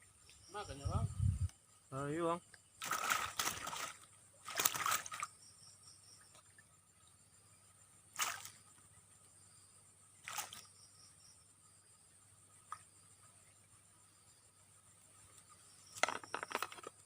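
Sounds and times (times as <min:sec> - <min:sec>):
water splashing: 0:02.8 - 0:05.3, 0:08.1 - 0:08.6, 0:10.2 - 0:10.7.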